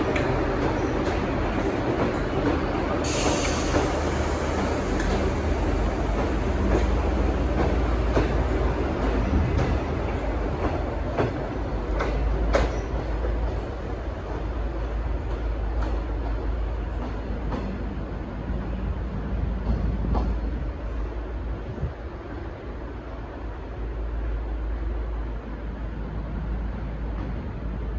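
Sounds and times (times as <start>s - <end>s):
high hiss: 0.0s - 10.9s
wheels clicking over rail joints: 0.0s - 17.8s
train low rumble: 0.0s - 27.9s.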